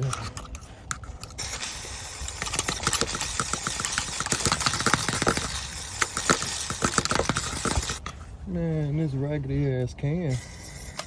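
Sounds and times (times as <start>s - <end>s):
aerosol can sputtering spray: 0.0s - 8.0s, 10.3s - 11.0s.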